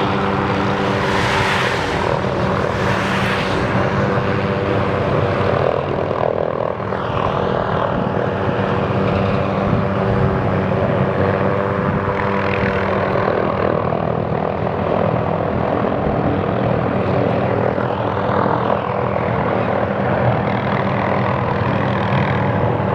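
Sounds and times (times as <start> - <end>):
helicopter engine and rotor: 0.0 - 22.9.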